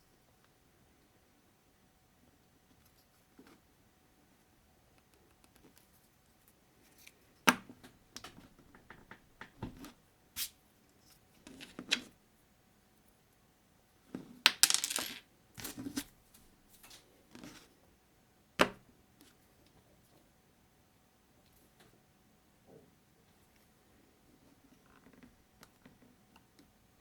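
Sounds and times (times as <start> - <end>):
plastic bricks clicking and clattering: 14.5 - 15.8.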